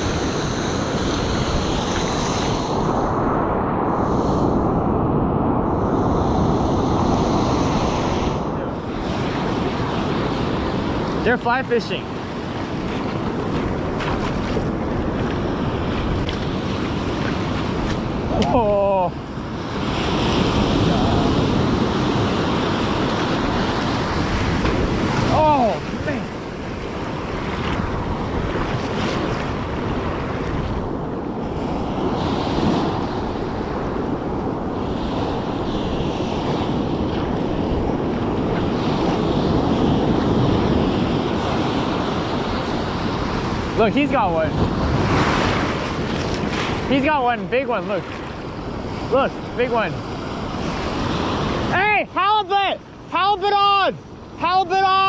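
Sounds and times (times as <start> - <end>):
wind buffeting microphone: 0.0 - 53.2
ocean surf washing on beach: 0.0 - 55.0.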